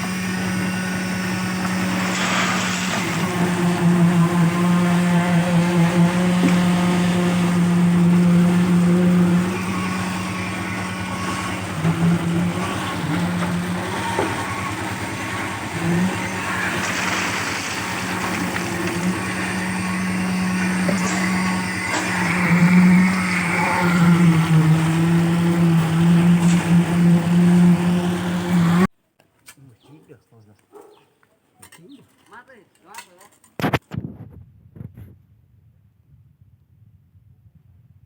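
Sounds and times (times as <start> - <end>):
engine humming under load: 0.0 - 28.9.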